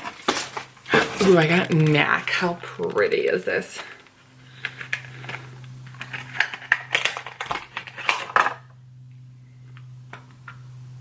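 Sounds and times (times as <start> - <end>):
packaging clicks and rustles: 0.0 - 8.7
steady low hum: 0.0 - 11.0.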